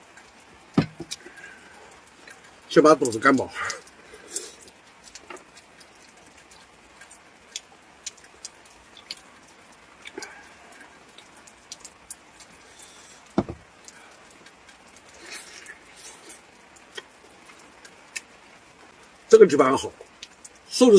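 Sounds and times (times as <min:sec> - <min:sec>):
light ticks and taps: 0:00.2 - 0:01.4
sharp knock: 0:00.8 - 0:01.1, 0:13.4 - 0:13.6.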